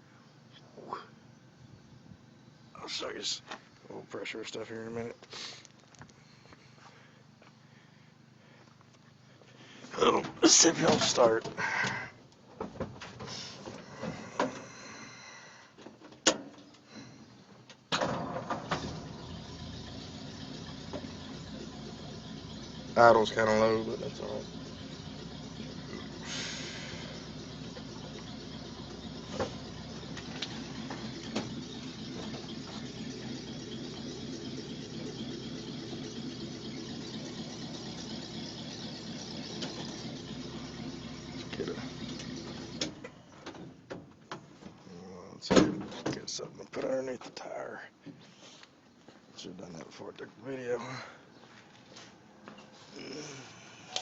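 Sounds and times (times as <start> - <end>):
engine starting and idling: 9.8 - 15.7, 16.7 - 44.0.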